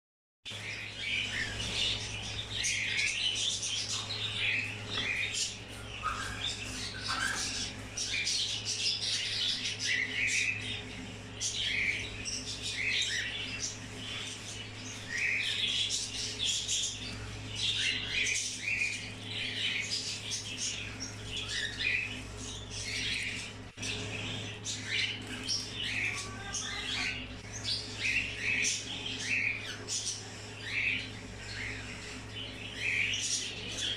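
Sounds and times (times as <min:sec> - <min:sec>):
parrots chirping and squawking: 0:00.5 - 0:33.9
steady low hum: 0:00.5 - 0:33.9.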